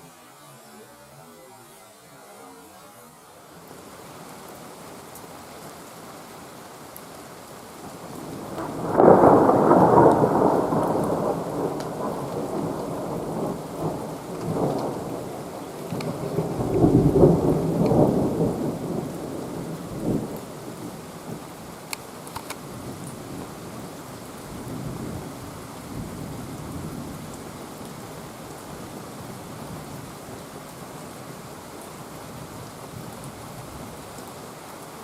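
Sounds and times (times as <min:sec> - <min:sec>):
thunder rolling: 0:08.2 - 0:20.4.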